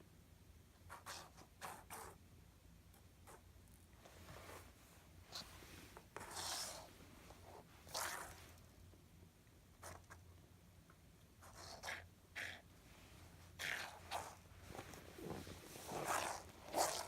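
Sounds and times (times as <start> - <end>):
object rustling and scraping: 4.0 - 8.6, 12.8 - 17.0.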